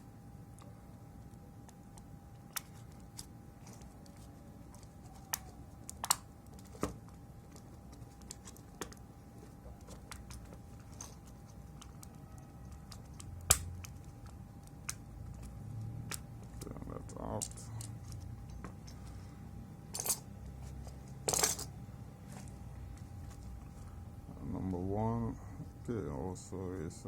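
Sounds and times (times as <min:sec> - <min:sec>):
sharp plastic snaps: 0:05.2 - 0:06.9, 0:11.8 - 0:16.7
faint steady tone: 0:09.0 - 0:22.1.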